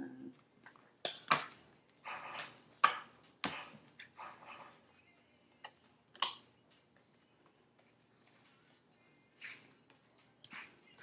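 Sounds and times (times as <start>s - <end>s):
cards swishing and tapping: 6.4s - 11.0s.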